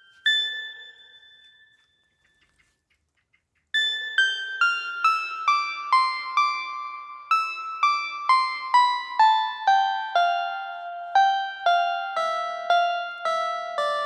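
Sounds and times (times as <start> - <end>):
keyboard notes: 3.8 - 14.0.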